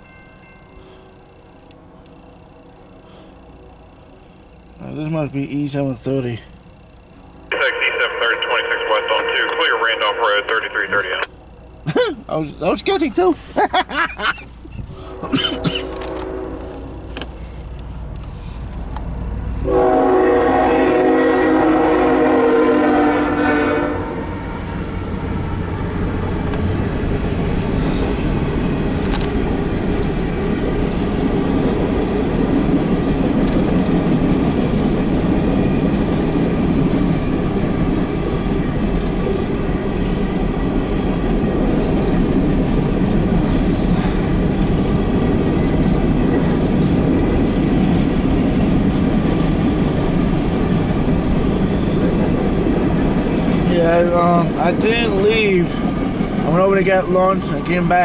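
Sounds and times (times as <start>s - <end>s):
train wheels clattering on rails: 26.1s - 53.7s.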